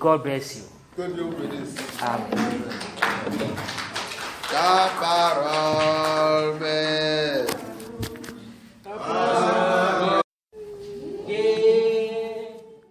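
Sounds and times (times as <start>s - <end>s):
voices singing held notes: 4.4s - 12.9s.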